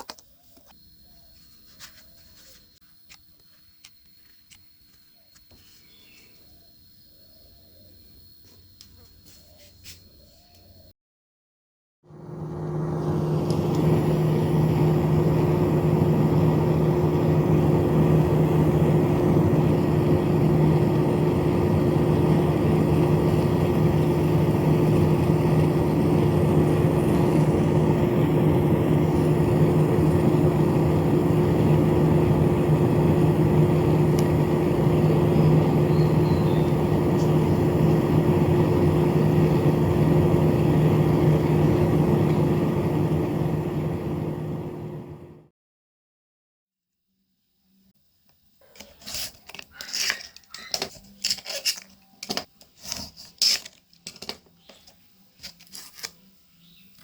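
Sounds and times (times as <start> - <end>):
small electric fan humming: 0.0 - 10.9, 12.1 - 45.4.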